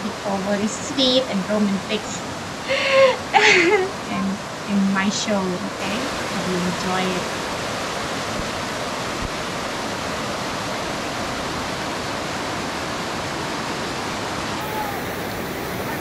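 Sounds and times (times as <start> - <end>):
water flowing over rocks: 5.3 - 16.0.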